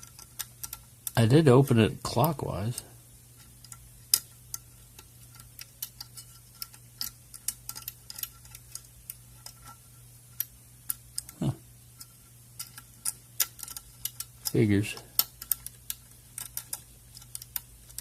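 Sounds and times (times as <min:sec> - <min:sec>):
lock pick metallic clicks: 0:03.6 - 0:09.6, 0:12.6 - 0:18.0.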